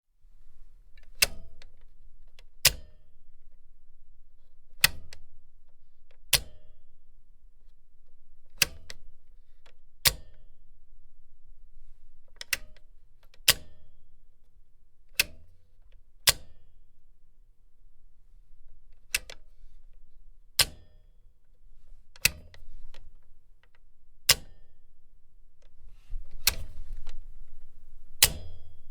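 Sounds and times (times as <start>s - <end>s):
machine switch clicking: 1.1s - 1.5s, 6.3s - 6.6s, 13.5s - 13.8s, 16.3s - 16.5s, 20.6s - 20.9s, 22.2s - 23.0s, 24.3s - 24.6s, 25.6s - 28.9s
low hum: 24.9s - 28.9s.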